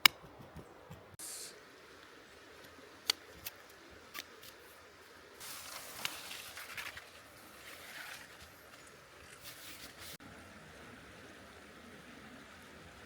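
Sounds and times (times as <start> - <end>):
faint steady hiss: 0.9 - 13.0
camping gear rustling and clicking: 5.4 - 10.2.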